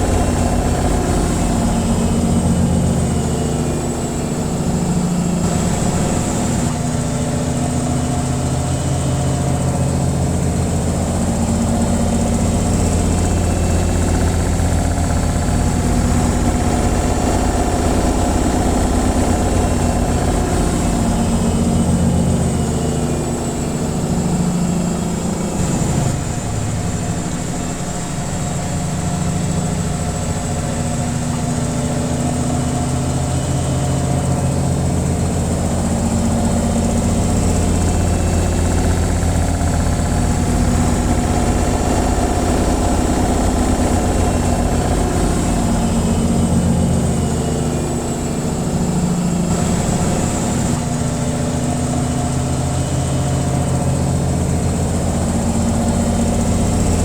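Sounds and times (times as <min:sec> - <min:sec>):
washing machine spinning: 0:00.0 - 0:57.0.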